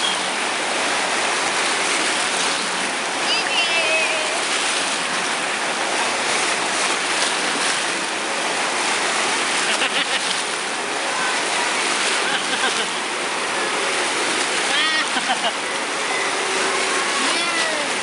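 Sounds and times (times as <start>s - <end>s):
rush of surging water: 0.0s - 18.0s.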